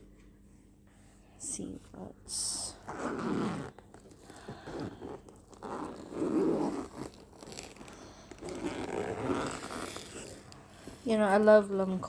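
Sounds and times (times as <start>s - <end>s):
packaging rustling and crinkling: 3.7s - 11.0s.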